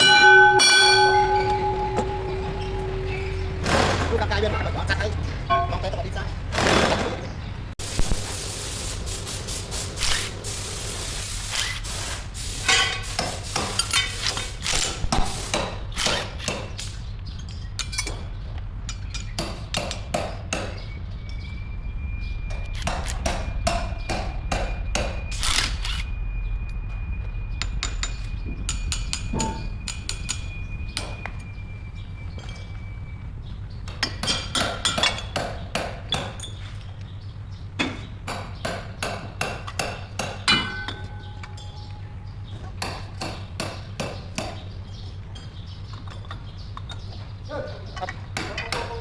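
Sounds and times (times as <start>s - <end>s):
thin high whine: 0.0s - 6.0s
hammer blows on steel: 0.0s - 6.4s
metal clanks: 0.0s - 7.2s, 27.6s - 31.5s, 33.9s - 36.9s, 37.8s - 44.7s
steady low hum: 0.0s - 12.5s, 16.9s - 47.5s.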